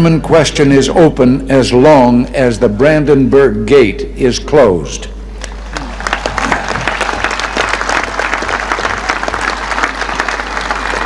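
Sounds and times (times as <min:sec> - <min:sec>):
large crowd applauding: 0:05.4 - 0:11.0.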